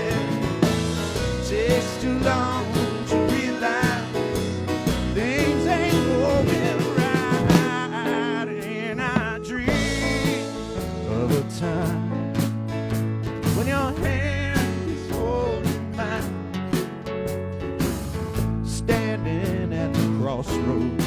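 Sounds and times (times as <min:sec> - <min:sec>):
drums keeping beat: 0:00.0 - 0:20.6
country band playing: 0:00.0 - 0:21.0.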